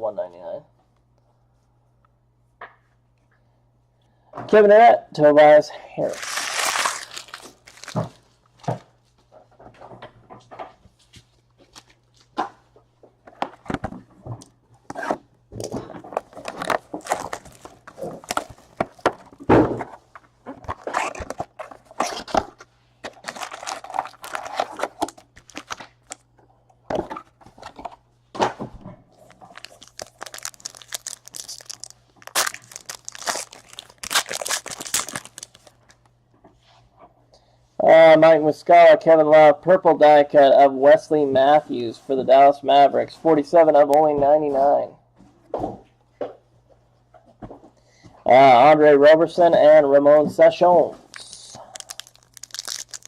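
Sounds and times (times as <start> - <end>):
card wrappers tearing and crinkling: 6.0 - 8.2, 16.2 - 19.4, 20.7 - 26.2, 29.2 - 36.1, 51.0 - 53.0
cards handled and set down: 6.2 - 8.2.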